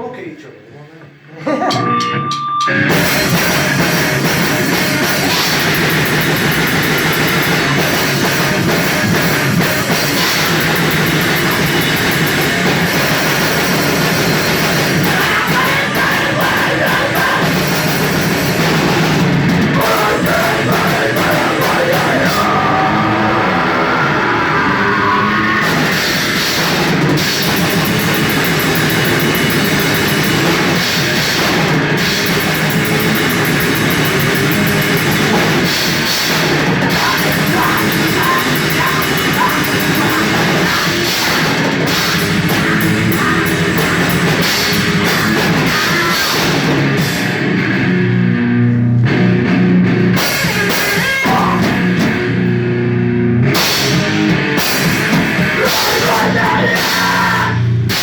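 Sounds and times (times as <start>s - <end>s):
heavy rock band playing live: 1.6s - 58.0s
pulsing cymbals: 27.3s - 45.4s.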